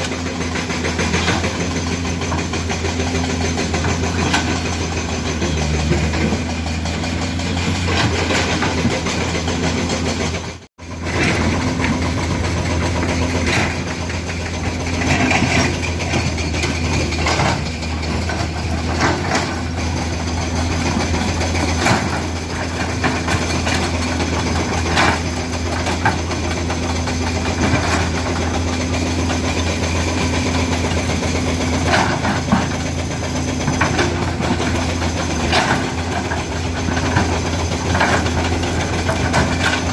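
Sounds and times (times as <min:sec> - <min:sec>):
excavator diesel engine running: 0:00.0 - 0:39.9
bucket clanking and scraping rock: 0:33.6 - 0:39.9.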